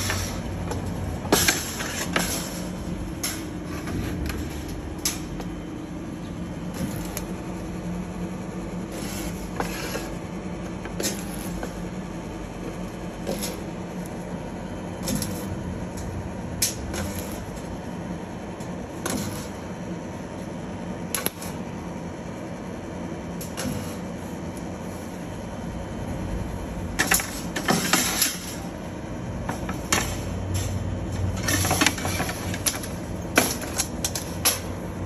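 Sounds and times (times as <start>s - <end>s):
spot welder snaps: 0.0s - 5.6s, 6.6s - 7.4s, 10.8s - 11.8s, 13.2s - 14.2s, 15.0s - 19.8s, 21.0s - 21.6s, 23.4s - 24.7s, 29.5s - 34.8s
machine hum: 0.0s - 35.0s.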